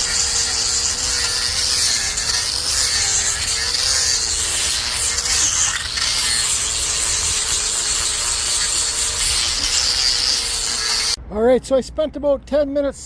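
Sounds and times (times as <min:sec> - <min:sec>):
power sander on wood: 0:00.0 - 0:11.2.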